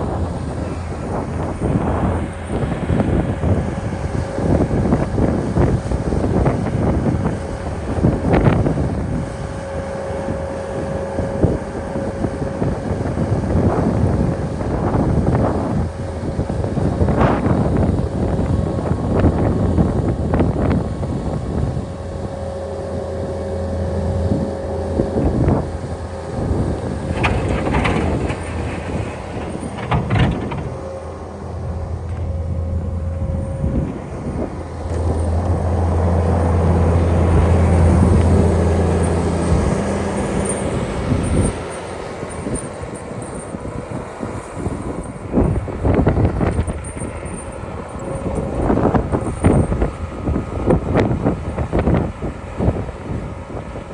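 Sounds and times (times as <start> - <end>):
vehicle engine humming: 0.0 - 53.9
sharp knocks and clanks: 27.1 - 35.6.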